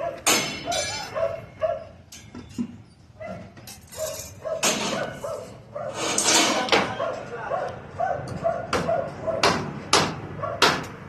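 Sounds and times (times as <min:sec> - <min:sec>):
dog barking: 0:00.0 - 0:02.0, 0:03.2 - 0:06.2, 0:06.8 - 0:09.6, 0:10.4 - 0:10.8.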